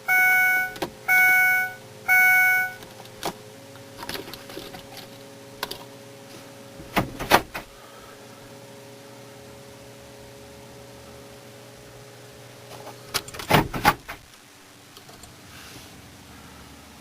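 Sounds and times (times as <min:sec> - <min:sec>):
steady low hum: 0:00.0 - 0:17.0
door locks clicking and clunking: 0:06.8 - 0:07.7, 0:13.1 - 0:14.2.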